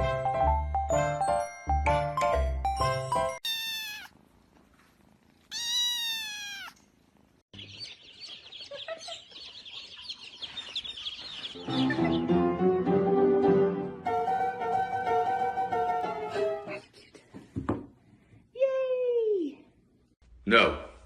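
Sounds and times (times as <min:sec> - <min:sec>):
music: 0:00.0 - 0:03.4, 0:11.6 - 0:16.8
rapid high chirping: 0:03.4 - 0:04.1
cat meowing: 0:03.4 - 0:04.2, 0:05.5 - 0:06.8.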